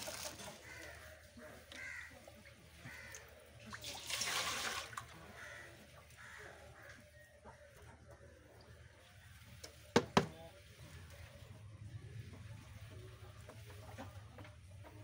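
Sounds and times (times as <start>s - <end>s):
water splash: 3.6s - 5.2s.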